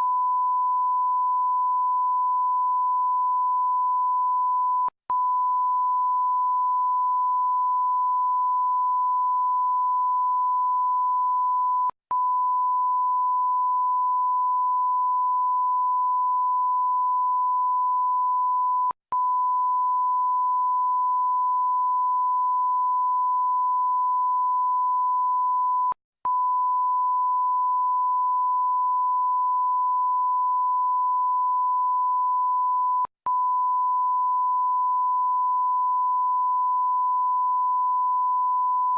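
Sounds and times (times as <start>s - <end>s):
censor bleep tone: 0.0s - 38.9s.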